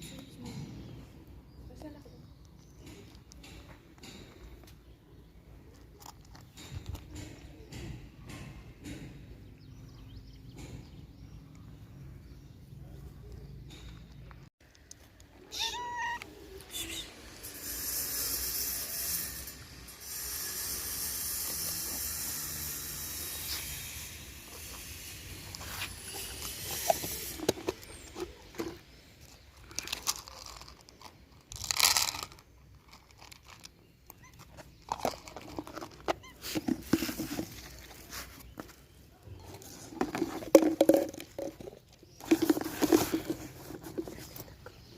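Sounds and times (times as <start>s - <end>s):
cats meowing: 15.4s - 17.1s.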